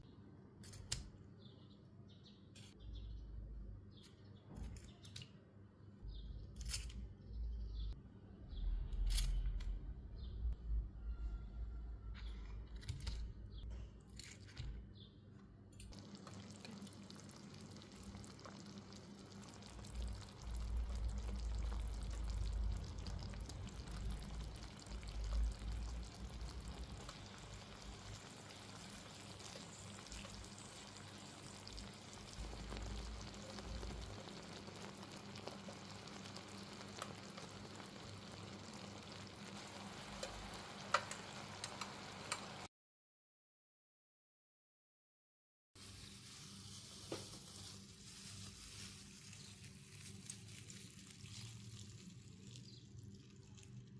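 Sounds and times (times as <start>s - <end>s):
chicken sizzling in frying pan: 15.9s - 42.7s, 45.8s - 53.7s.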